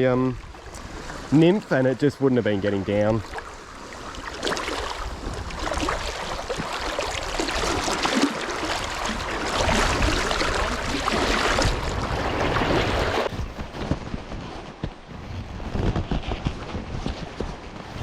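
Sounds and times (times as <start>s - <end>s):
wind rumble on microphone: 2.6s - 18.0s
river water rushing: 3.2s - 13.3s.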